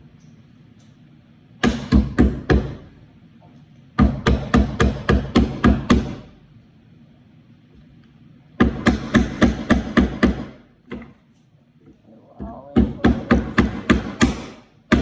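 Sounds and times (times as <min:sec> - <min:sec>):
hammer driving nails into wood: 0:01.6 - 0:02.8, 0:08.6 - 0:11.1, 0:12.9 - 0:15.0.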